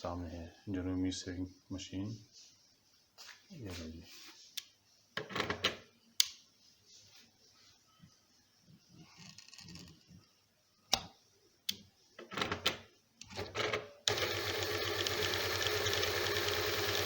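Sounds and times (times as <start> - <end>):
sewing machine running: 14.1 - 17.0.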